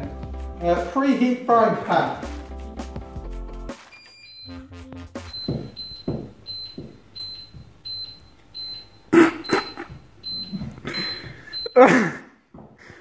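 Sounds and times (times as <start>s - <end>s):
hob control panel beeping: 4.0s - 11.8s
person crying out: 11.8s - 12.3s.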